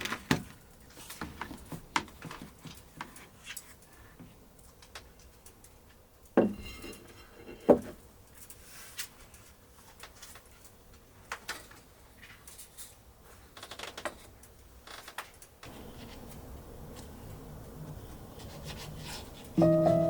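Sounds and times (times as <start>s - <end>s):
small clicks and ticks: 4.6s - 6.4s
light scratching and rubbing: 15.6s - 19.6s.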